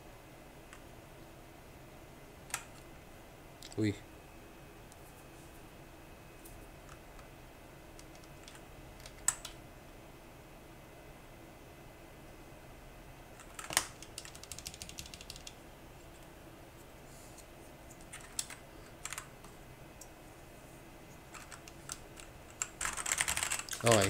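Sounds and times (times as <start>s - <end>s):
mechanical keyboard typing: 2.5s - 2.8s, 8.0s - 9.6s, 13.4s - 15.6s, 18.0s - 19.3s, 21.3s - 24.0s.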